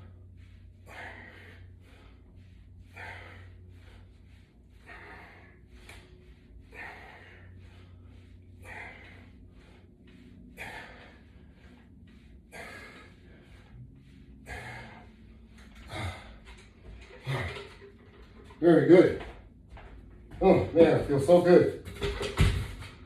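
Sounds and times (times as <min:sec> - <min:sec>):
person breathing hard: 0:00.0 - 0:18.6
faint low hum: 0:00.0 - 0:23.0.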